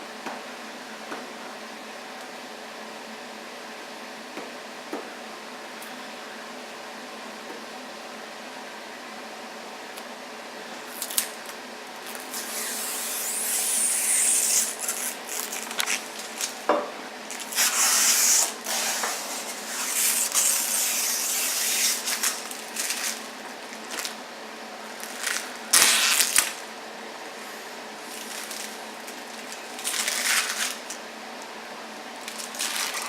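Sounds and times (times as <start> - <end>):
packaging rustling and crinkling: 14.6 - 16.7, 21.3 - 24.2, 24.8 - 26.6, 28.0 - 31.0, 32.2 - 33.0.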